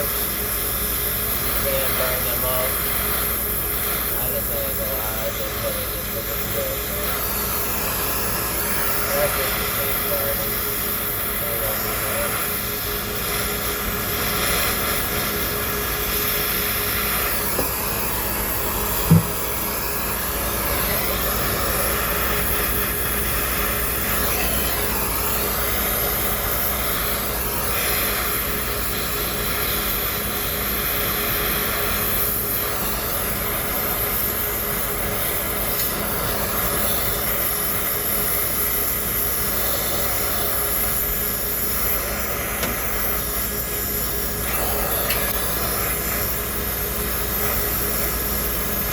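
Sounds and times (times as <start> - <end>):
torch flame burning: 0.0 - 48.9
short thump: 19.1 - 19.4.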